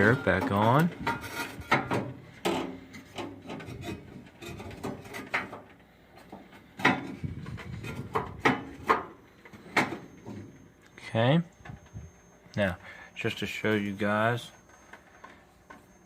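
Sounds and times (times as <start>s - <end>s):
metal cover scraping: 0.0s - 10.6s.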